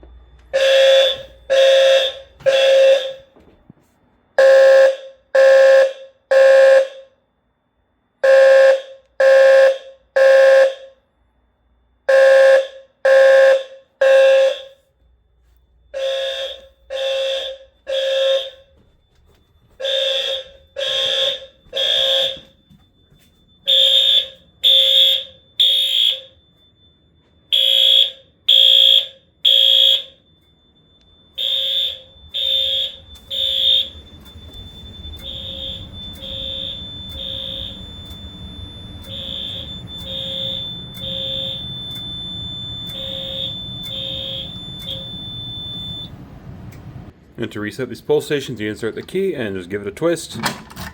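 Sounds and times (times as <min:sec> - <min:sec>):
fire alarm horn pulses: 0:00.0 - 0:50.2
faint steady high tone: 0:12.8 - 0:28.4, 0:29.2 - 0:46.3.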